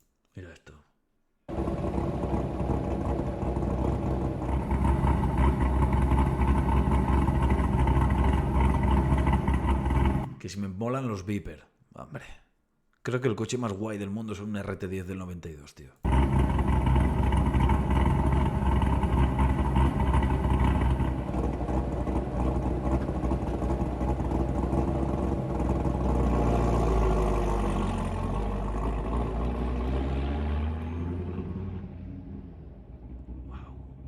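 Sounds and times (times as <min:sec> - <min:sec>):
sports car engine rumbling: 0:01.5 - 0:10.4, 0:16.1 - 0:34.0.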